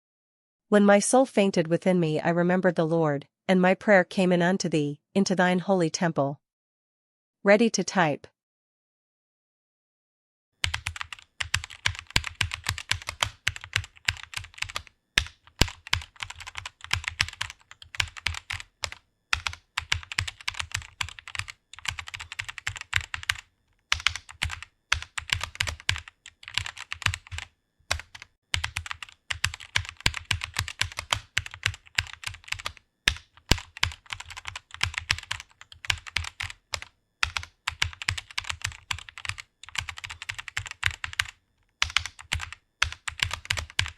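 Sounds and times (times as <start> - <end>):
typing on a computer keyboard: 10.6 - 43.9.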